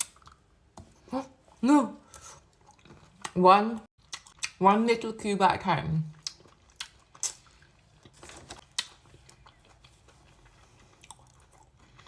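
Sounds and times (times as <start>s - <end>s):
chocolate crunching while chewing: 6.2s - 12.0s.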